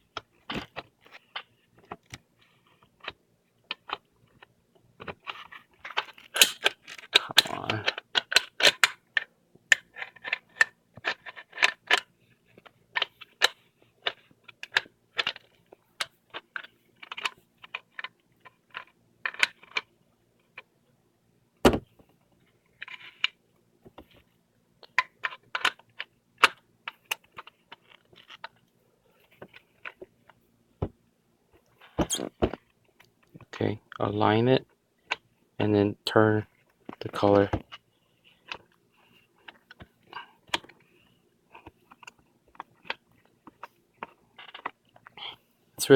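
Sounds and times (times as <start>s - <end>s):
metal parts clicking and rattling: 5.0s - 9.0s.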